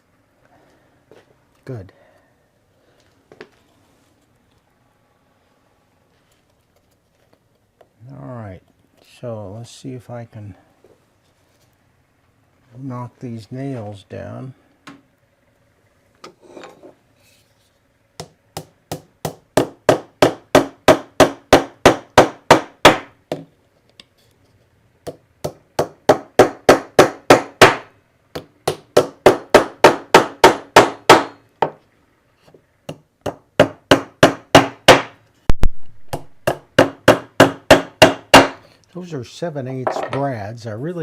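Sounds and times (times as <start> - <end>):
hammer tapping nails into wood: 28.4 - 31.8, 32.9 - 35.1, 36.1 - 38.6.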